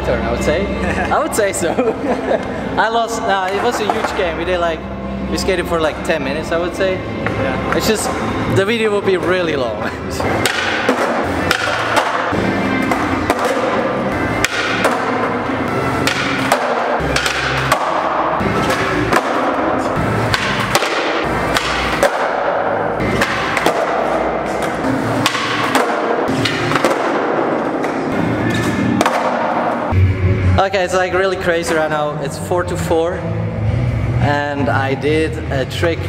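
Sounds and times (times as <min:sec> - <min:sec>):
background music with a beat: 0:09.9 - 0:31.1.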